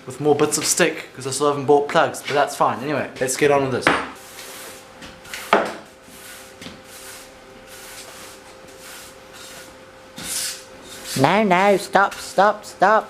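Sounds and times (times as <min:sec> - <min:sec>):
broom sweeping a floor: 0:04.2 - 0:12.4.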